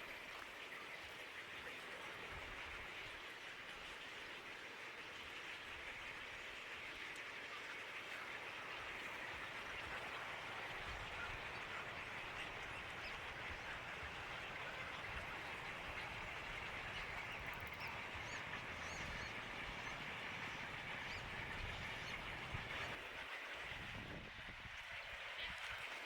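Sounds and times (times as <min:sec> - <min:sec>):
birds calling: 0:08.7 - 0:23.0.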